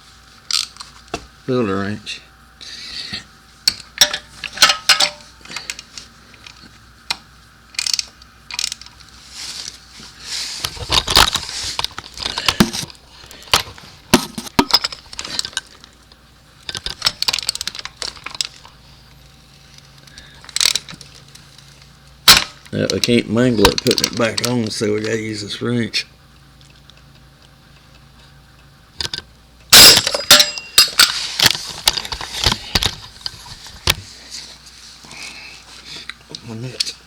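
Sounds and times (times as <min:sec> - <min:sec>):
metal tools clinking: 0:04.0 - 0:05.8, 0:14.6 - 0:15.7, 0:29.1 - 0:33.3
scraping rustle: 0:09.1 - 0:12.2.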